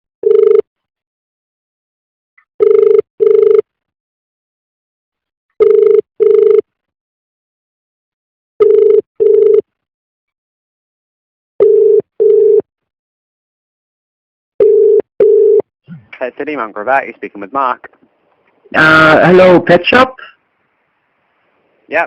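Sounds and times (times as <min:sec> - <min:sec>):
telephone ringback tone: 0:00.2 - 0:00.6, 0:02.6 - 0:03.6, 0:05.6 - 0:06.6, 0:08.6 - 0:09.6, 0:11.6 - 0:12.6, 0:14.6 - 0:15.6.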